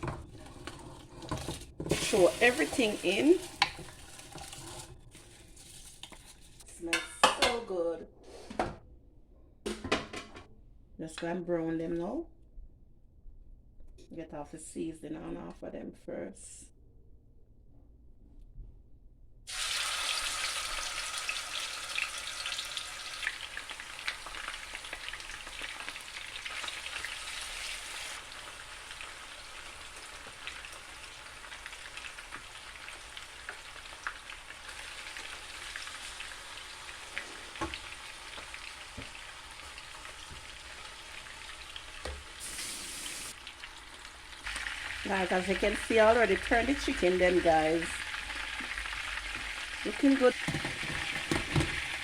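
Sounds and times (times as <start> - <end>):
chicken sizzling in hot oil: 1.9 - 6.5, 19.5 - 52.0.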